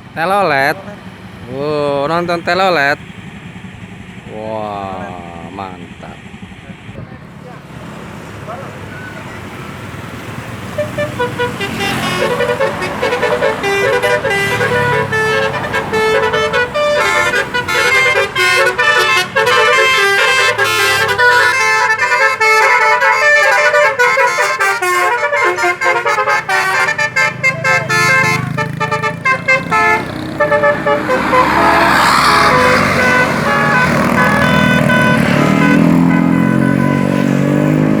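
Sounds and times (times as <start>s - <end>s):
musical air horn tune: 10.7s - 37.9s
rising tone: 29.6s - 38.0s.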